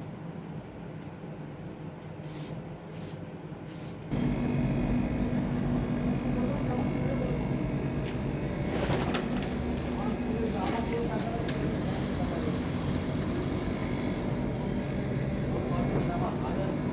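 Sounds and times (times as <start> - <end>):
loud motor hum: 4.1 - 16.9
low machine hum: 4.1 - 16.9.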